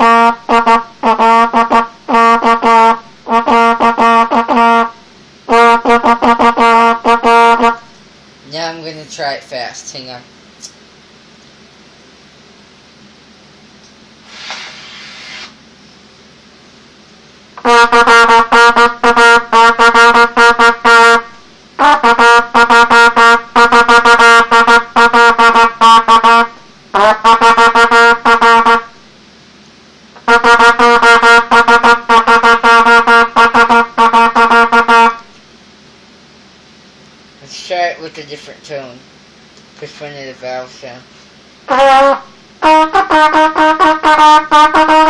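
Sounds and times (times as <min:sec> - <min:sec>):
trumpet blasts: 0:00.0 - 0:08.0, 0:17.6 - 0:29.0, 0:30.2 - 0:35.4, 0:41.6 - 0:45.0
rush of air: 0:14.2 - 0:15.6.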